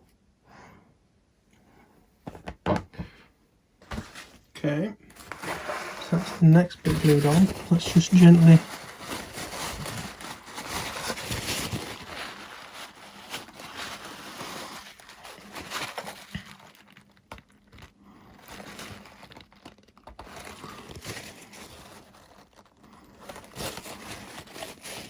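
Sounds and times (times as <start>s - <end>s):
foam crinkling and tapping: 5.0s - 25.0s.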